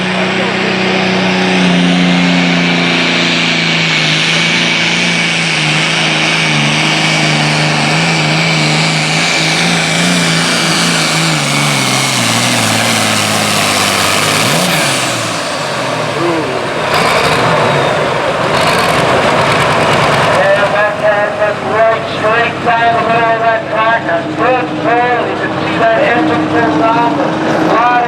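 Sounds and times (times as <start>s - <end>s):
tractor diesel engine at full power: 0.0s - 28.0s.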